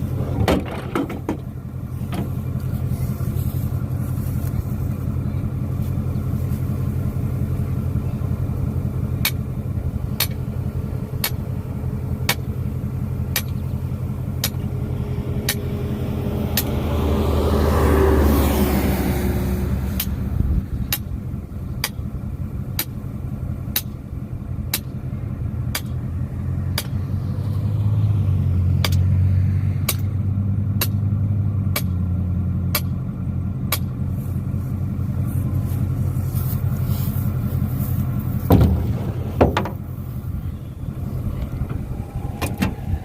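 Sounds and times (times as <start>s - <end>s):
vehicle engine running: 0.0s - 43.0s
knocks: 38.5s - 39.8s.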